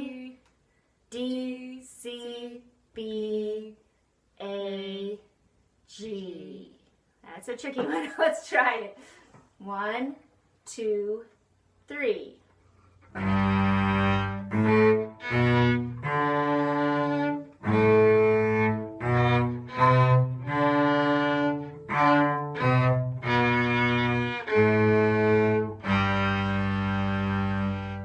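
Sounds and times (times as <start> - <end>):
cello and violin melody: 13.0 - 28.0.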